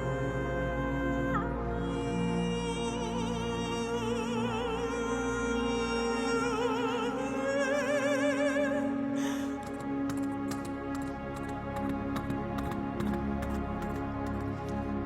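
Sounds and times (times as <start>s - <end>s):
woman singing operatically: 0.0s - 9.7s
sustained backing music: 0.0s - 15.0s.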